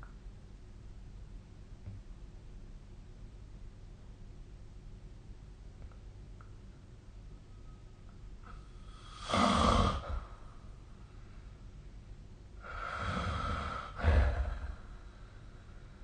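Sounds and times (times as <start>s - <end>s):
person snoring: 8.8s - 10.5s, 12.6s - 15.0s.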